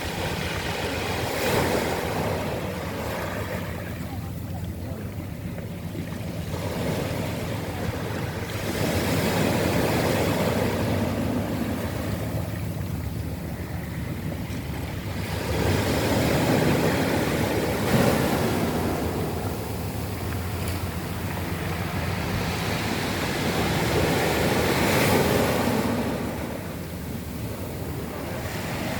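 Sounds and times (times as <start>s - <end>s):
waves washing up pebble beach: 0.0s - 4.6s, 15.1s - 28.9s.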